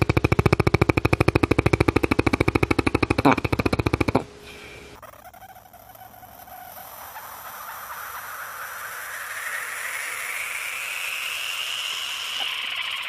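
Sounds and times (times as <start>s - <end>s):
rising hissing rush: 6.7s - 13.0s.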